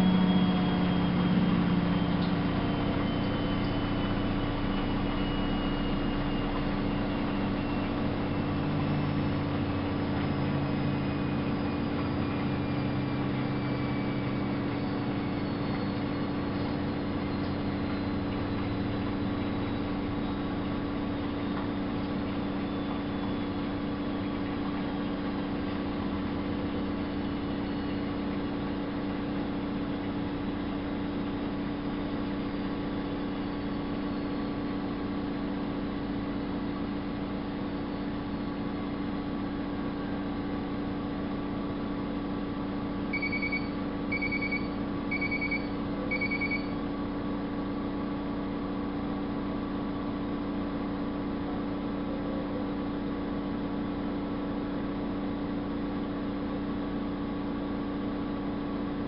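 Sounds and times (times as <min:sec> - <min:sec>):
washing machine motor hum: 0:00.0 - 0:59.0
short high beeps: 0:43.1 - 0:46.8.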